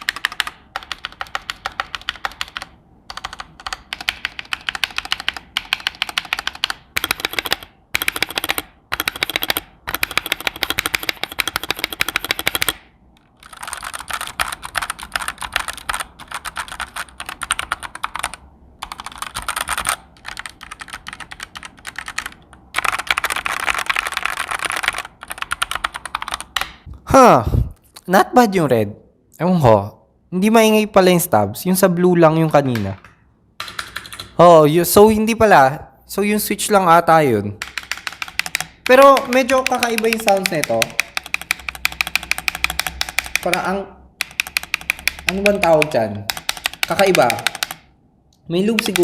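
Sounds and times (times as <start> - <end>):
fast typing on mechanical keyboard: 0.0 - 26.9, 33.6 - 34.4, 37.6 - 47.9, 48.6 - 49.0.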